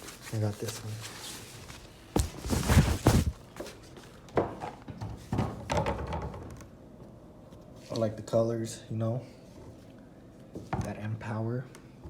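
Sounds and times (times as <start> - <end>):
thumps and rustling: 0.7 - 3.7
handling knocks: 2.2 - 3.4.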